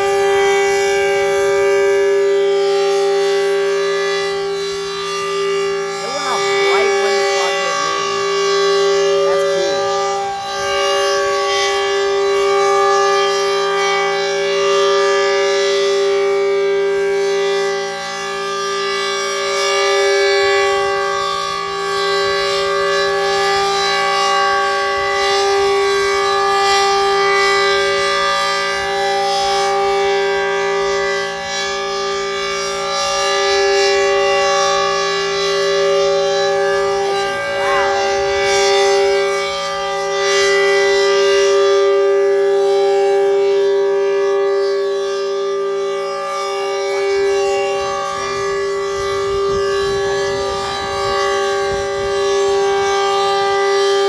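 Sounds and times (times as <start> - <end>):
warning siren steady tone: 0.0 - 54.0.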